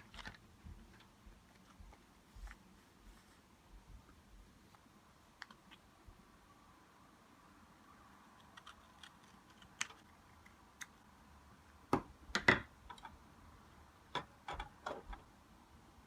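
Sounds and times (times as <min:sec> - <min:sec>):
mechanical keyboard keys clicking: 0:08.4 - 0:11.0.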